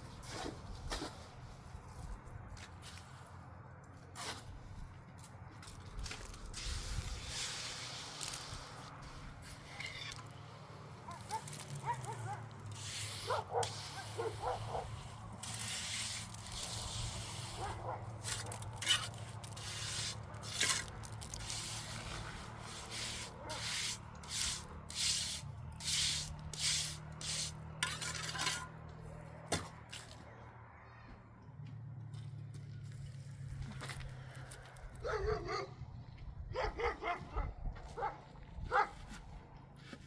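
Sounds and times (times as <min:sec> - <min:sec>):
scraping strokes: 0:05.6 - 0:10.4, 0:11.1 - 0:28.8.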